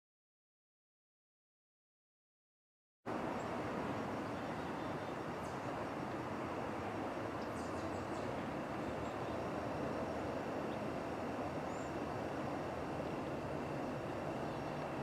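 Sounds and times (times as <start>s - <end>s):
faint bird chirps: 3.3s - 6.3s, 7.4s - 10.9s, 11.6s - 12.1s, 14.3s - 15.0s.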